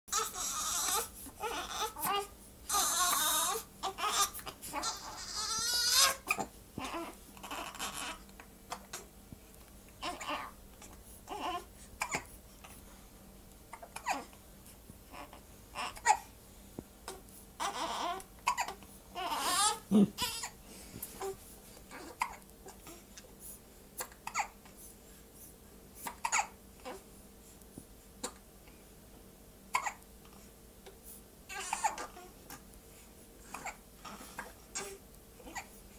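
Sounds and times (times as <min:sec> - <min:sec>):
infant crying: 0:00.1 - 0:09.1, 0:10.0 - 0:10.6, 0:11.3 - 0:12.3, 0:13.8 - 0:14.4, 0:17.1 - 0:20.6, 0:31.5 - 0:32.3
infant hiccuping: 0:13.7 - 0:14.3, 0:17.6 - 0:20.5, 0:24.0 - 0:24.5, 0:26.1 - 0:27.0, 0:29.7 - 0:30.0
person hiccuping: 0:19.8 - 0:20.5.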